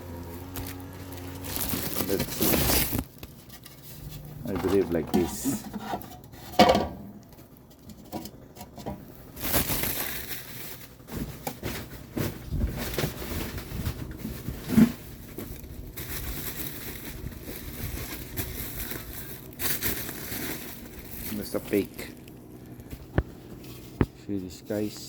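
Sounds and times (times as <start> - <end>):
rocks rustling and knocking: 0.4 - 5.6.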